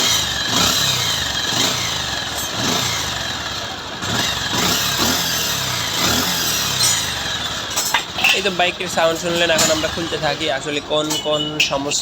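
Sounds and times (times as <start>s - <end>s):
motorcycle engine with mechanical noise: 0.0s - 12.0s.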